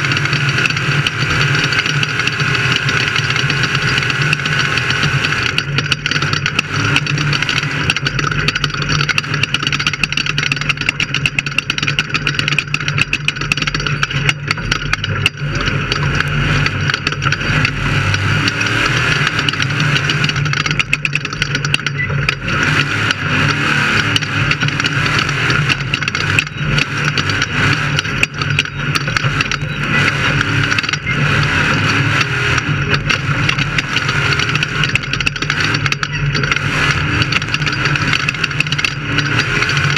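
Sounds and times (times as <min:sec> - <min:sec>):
engine running loud: 0:00.0 - 0:39.9
knocks and rattles: 0:00.0 - 0:39.9.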